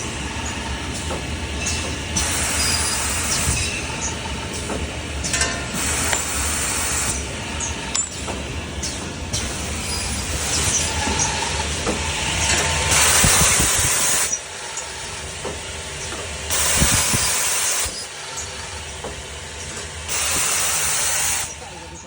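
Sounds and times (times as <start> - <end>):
machine humming: 0.0 - 22.0
loud hissing bursts: 16.5 - 18.0, 20.1 - 21.6.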